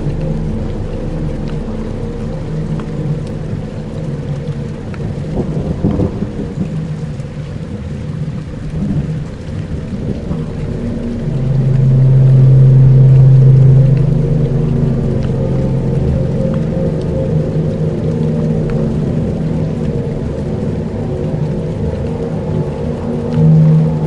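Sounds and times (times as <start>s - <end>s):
low drone tones: 0.0s - 24.0s
rain: 0.0s - 24.0s
rolling thunder: 5.0s - 24.0s.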